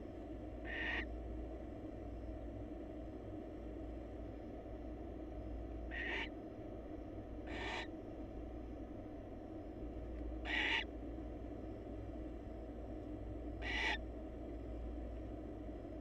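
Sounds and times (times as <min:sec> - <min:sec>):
steady low hum: 0:00.0 - 0:16.0
owl raspy hissing calls: 0:00.6 - 0:01.1, 0:05.9 - 0:06.4, 0:07.4 - 0:08.0, 0:10.4 - 0:10.9, 0:13.6 - 0:14.0.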